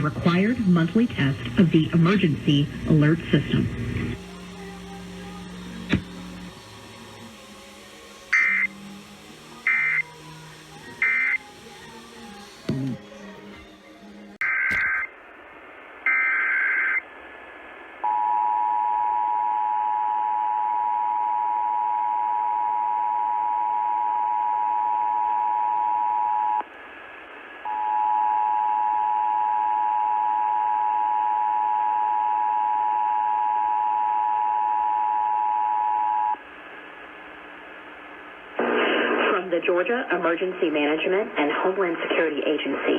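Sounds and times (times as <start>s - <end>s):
radio hiss: 0.0s - 18.1s, 36.4s - 42.9s
screeching digital data burst: 6.5s - 12.6s.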